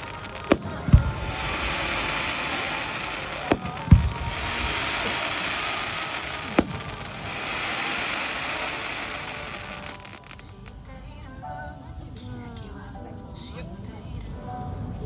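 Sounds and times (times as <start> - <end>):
deep firework boom: 0.0 - 10.2
fireworks sharp cracks: 0.0 - 10.8
fireworks crackling and sizzling: 0.0 - 11.1.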